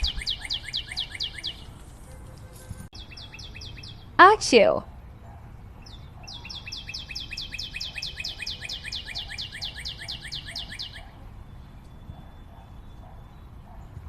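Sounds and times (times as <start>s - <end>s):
bird trilling: 0.0s - 1.7s, 3.0s - 4.1s, 5.8s - 11.1s.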